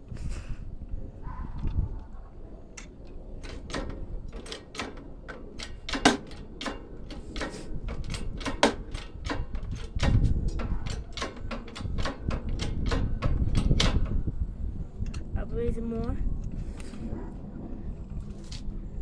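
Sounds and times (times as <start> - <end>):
plastic housing creaking and snapping: 2.8 - 14.4.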